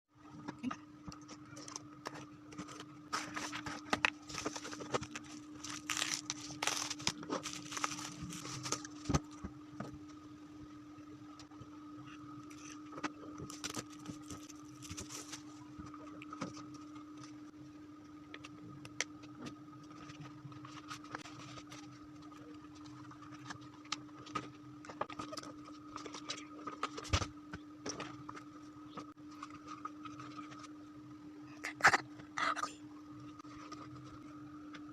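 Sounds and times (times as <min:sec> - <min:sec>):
steady two-tone hum: 0:00.1 - 0:34.9
packaging rustling and crinkling: 0:01.6 - 0:09.3, 0:13.4 - 0:15.6.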